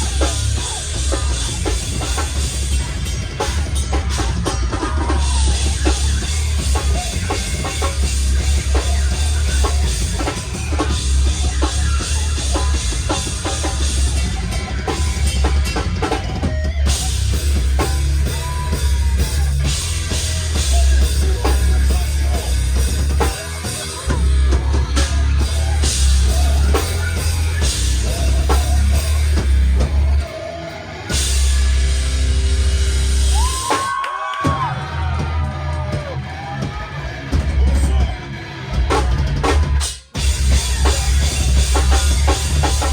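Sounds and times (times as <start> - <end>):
hardcore band playing live: 0.0 - 42.9.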